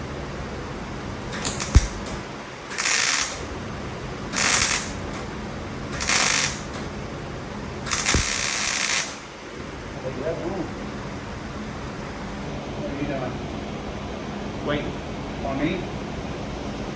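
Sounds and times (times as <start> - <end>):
welder crackling and hissing: 0.0 - 12.6
sharp click: 1.3 - 3.4, 7.9 - 9.2.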